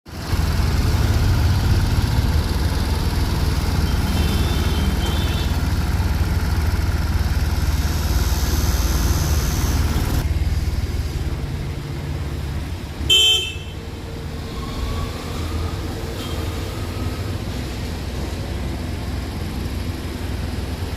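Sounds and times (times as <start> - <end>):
road traffic rumble: 0.1 - 20.9
vehicle horn: 3.9 - 5.6, 13.1 - 13.9.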